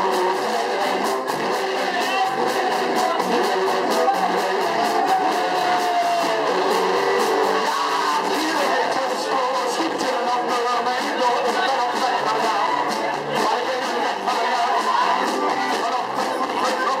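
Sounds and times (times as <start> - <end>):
electric guitar: 0.0 - 17.0
steady drum beat: 0.0 - 17.0.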